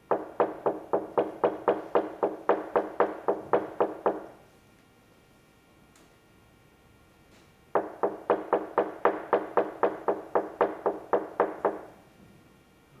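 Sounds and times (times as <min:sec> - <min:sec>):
sharp knocks: 0:00.1 - 0:04.4, 0:07.8 - 0:12.0.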